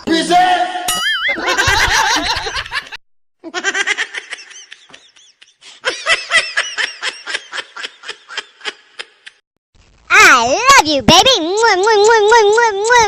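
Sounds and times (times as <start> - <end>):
high-pitched laughing: 1.0 - 9.4.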